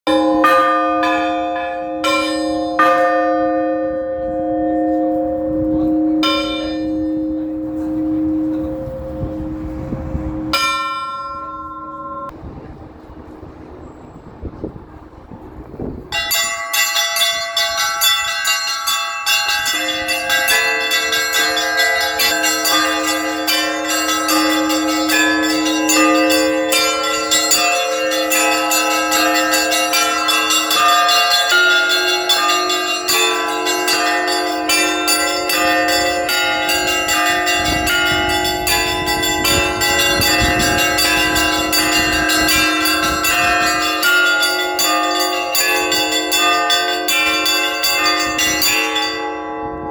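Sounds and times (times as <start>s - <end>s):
deep church bells ringing: 0.1s - 49.9s
small bells struck quickly: 16.2s - 49.6s.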